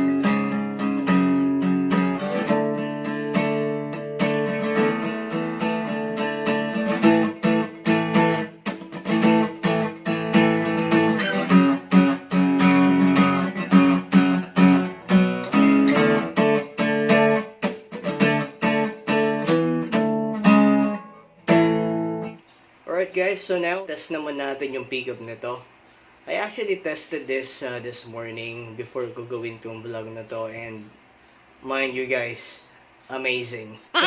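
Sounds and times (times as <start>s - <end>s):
acoustic guitar strummed chords: 0.0s - 22.3s.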